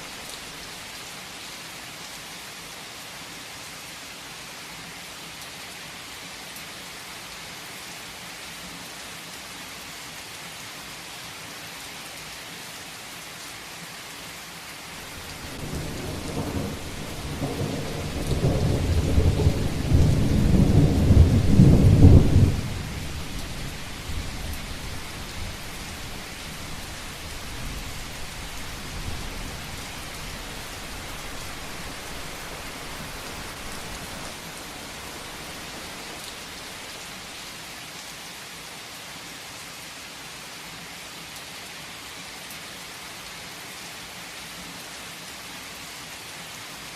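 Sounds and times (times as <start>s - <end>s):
heavy rain falling: 0.0s - 2.6s, 14.8s - 40.2s
thunder rolling: 15.0s - 36.0s.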